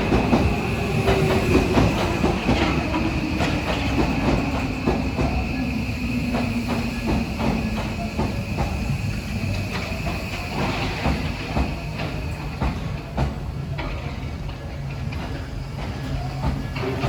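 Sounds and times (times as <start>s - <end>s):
high-pitched train whine: 0.0s - 17.0s
train rumble: 0.0s - 17.0s
train wheels clicking over rail joints: 0.0s - 17.0s.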